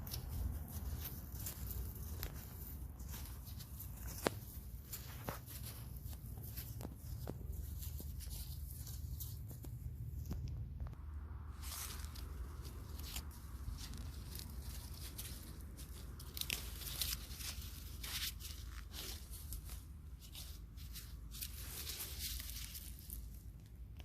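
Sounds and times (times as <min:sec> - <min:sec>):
hands handling soil and plants: 0:00.0 - 0:24.0.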